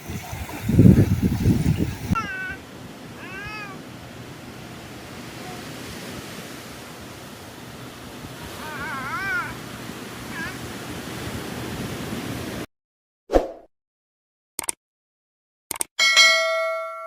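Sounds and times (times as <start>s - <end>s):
surf or wind noise: 0.0s - 12.7s
cat meowing: 2.2s - 2.6s, 3.2s - 3.8s, 8.6s - 9.6s.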